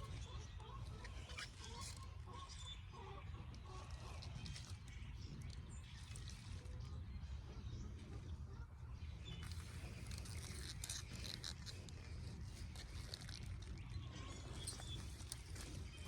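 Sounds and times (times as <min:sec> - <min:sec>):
stems and leaves rustling: 0:09.4 - 0:16.0.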